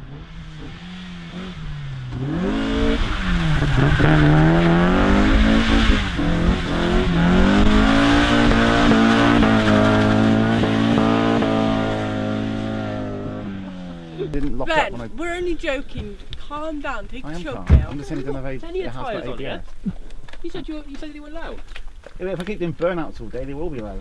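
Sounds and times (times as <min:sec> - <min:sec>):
car engine revving hard: 0:00.0 - 0:14.2
tyres squealing on wet road: 0:00.7 - 0:11.4.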